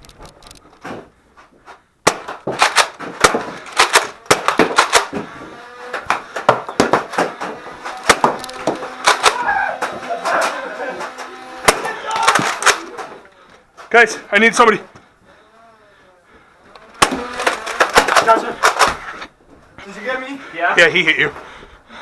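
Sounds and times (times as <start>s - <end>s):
darts hitting walls and furniture: 0.8s - 13.2s, 16.8s - 19.3s
foam-dart blasters firing: 2.0s - 13.1s, 16.9s - 19.0s.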